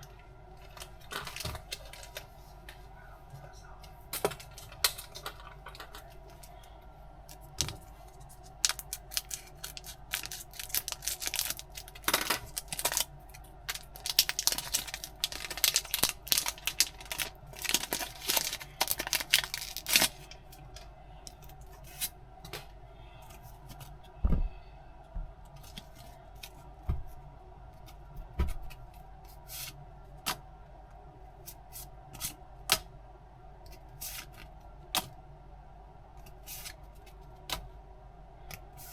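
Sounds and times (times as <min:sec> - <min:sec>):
faint steady hum: 0:00.0 - 0:38.9
packaging crinkling and tearing: 0:07.3 - 0:20.8
soft thumps: 0:24.2 - 0:25.3.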